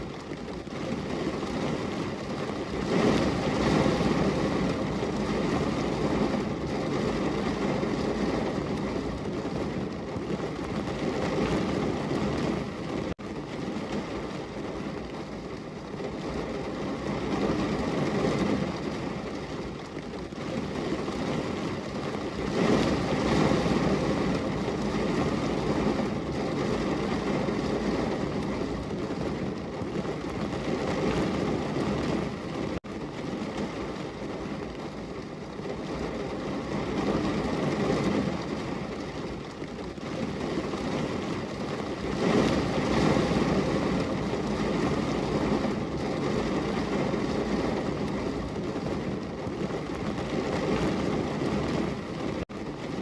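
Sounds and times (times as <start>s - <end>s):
heavy rain on a window: 0.0s - 53.0s.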